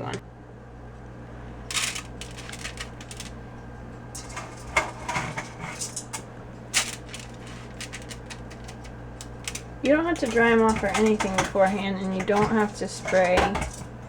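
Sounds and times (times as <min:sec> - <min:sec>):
seeds clicking in kitchenware: 0:06.8 - 0:12.8.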